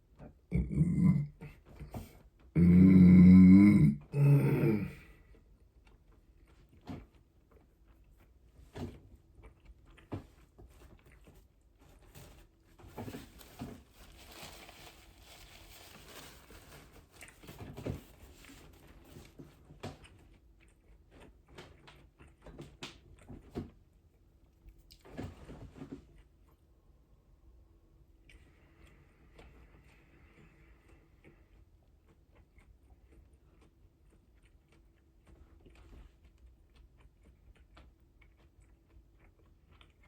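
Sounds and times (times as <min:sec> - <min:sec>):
person chewing and biting: 0:04.9 - 0:12.2, 0:30.9 - 0:40.0.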